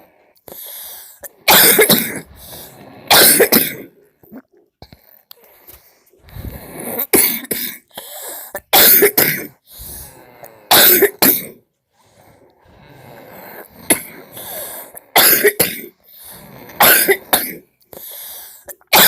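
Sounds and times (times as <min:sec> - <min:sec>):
noisy breathing: 0:00.0 - 0:01.4, 0:02.2 - 0:03.1, 0:05.1 - 0:07.1, 0:07.9 - 0:08.6, 0:09.6 - 0:10.7, 0:11.9 - 0:15.2, 0:15.9 - 0:16.9, 0:17.9 - 0:18.7
person coughing hard: 0:01.4 - 0:02.3, 0:03.1 - 0:04.0, 0:07.0 - 0:07.9, 0:08.6 - 0:09.6, 0:10.7 - 0:11.6, 0:13.9 - 0:14.2, 0:15.1 - 0:16.0, 0:16.8 - 0:17.6, 0:18.8 - 0:19.0.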